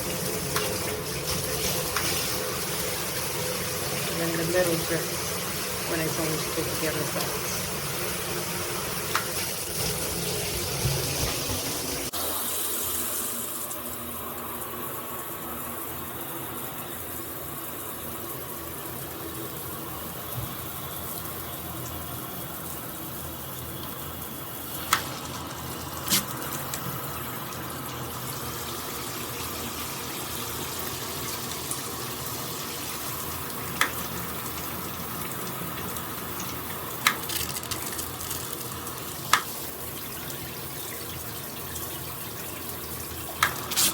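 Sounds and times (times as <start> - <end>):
shower water spraying: 0.0 - 13.6, 24.6 - 27.2, 42.8 - 43.9.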